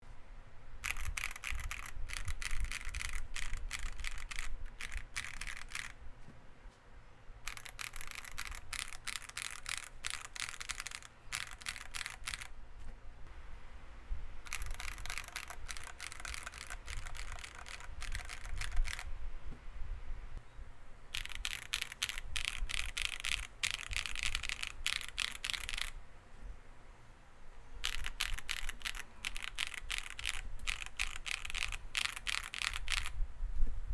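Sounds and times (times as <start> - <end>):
mechanical keyboard typing: 0.8 - 6.0, 7.5 - 12.5, 14.5 - 19.1, 21.1 - 26.0, 27.8 - 33.2.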